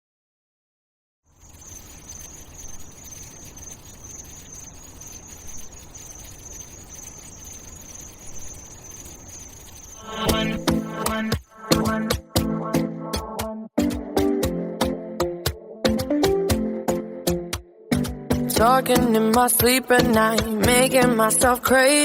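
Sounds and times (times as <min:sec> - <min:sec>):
insect chirring: 0:01.3 - 0:12.0
pop music with a beat: 0:10.0 - 0:22.0.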